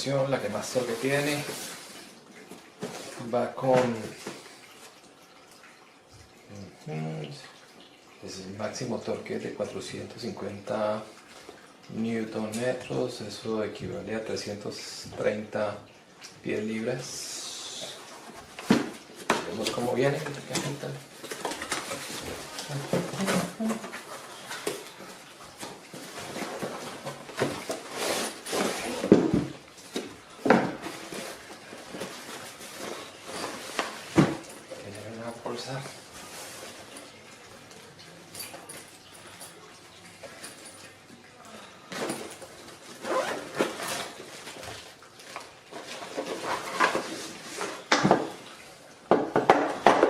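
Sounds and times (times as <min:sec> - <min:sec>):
cardboard packaging rustling: 0:00.0 - 0:05.0, 0:17.9 - 0:34.5, 0:42.0 - 0:48.0.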